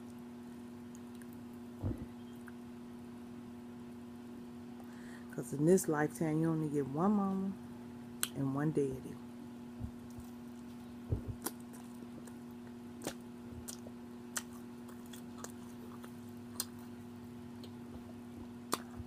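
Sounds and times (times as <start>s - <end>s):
steady low hum: 0.0s - 19.0s
person chewing food: 0.8s - 2.6s, 9.9s - 19.0s
wet mouth clicks and lip smacks: 13.0s - 16.8s, 18.7s - 19.0s.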